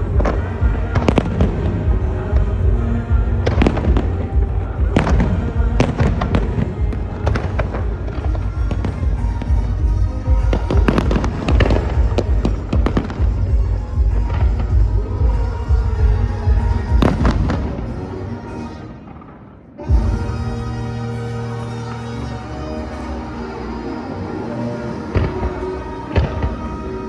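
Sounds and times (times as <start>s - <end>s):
fireworks bursting and crackling: 0.0s - 27.0s
music: 0.0s - 27.0s.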